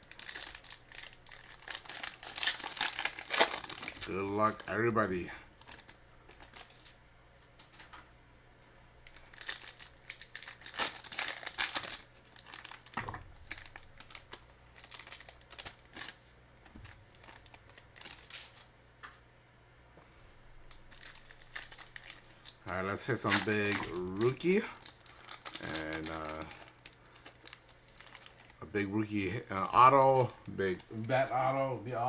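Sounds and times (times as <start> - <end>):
foil wrappers crinkling and tearing: 0.0 - 7.0, 9.0 - 18.7, 20.6 - 31.6.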